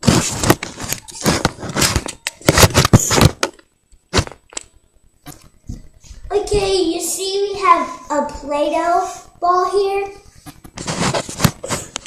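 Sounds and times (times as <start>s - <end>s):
crackling and rustling: 0.0s - 6.7s, 10.0s - 12.0s.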